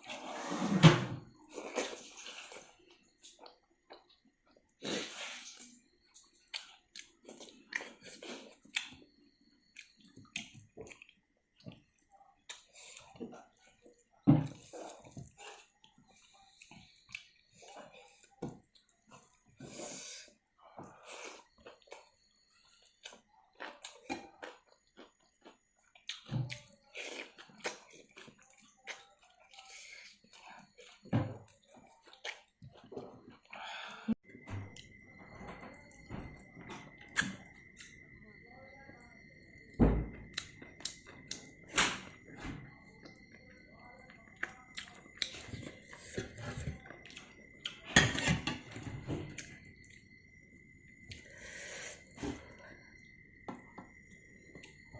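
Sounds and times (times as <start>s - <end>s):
person chewing food: 1.4s - 19.4s, 20.8s - 33.6s, 40.3s - 41.6s, 44.0s - 47.9s.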